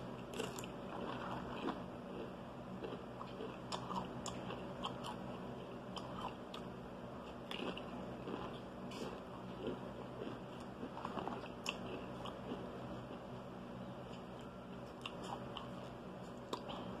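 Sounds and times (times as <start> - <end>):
person chewing food: 0.2 - 13.3, 14.0 - 17.0.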